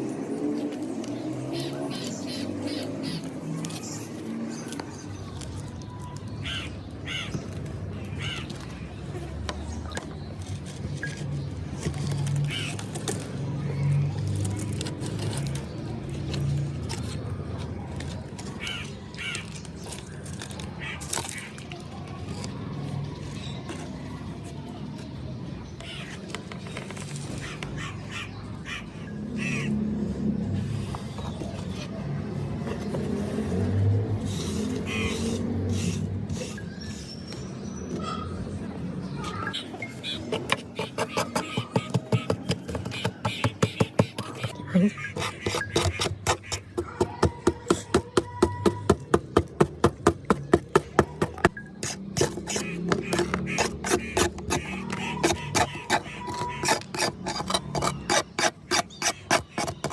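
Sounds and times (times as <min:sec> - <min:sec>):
crows cawing: 0:27.4 - 0:29.8, 0:52.5 - 0:57.0.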